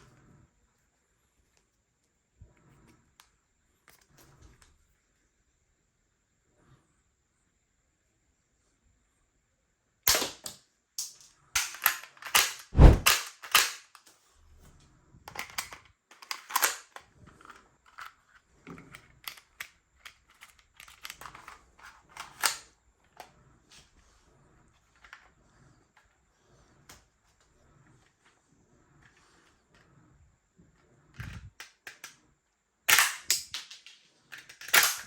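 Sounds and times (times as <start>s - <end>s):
toy gun plastic clicks: 10.1s - 14.1s, 15.3s - 22.7s, 31.2s - 32.2s, 32.9s - 35.0s
heavier thump: 12.8s - 13.1s.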